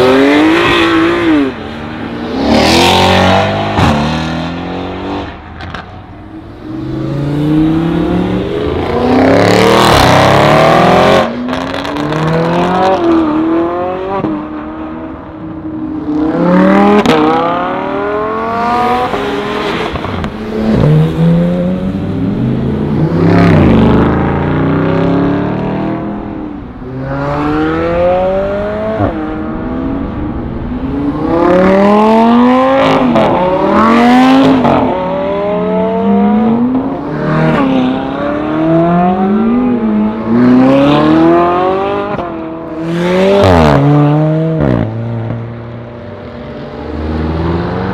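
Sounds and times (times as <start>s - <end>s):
sports cars accelerating hard: 0.0s - 47.9s.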